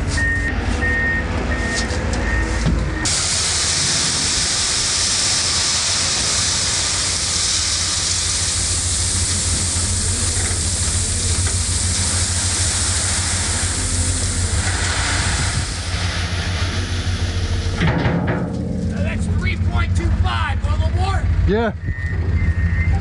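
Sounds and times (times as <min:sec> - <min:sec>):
heavy vehicle engine humming: 0:00.0 - 0:23.0
loud even hiss: 0:03.0 - 0:17.8.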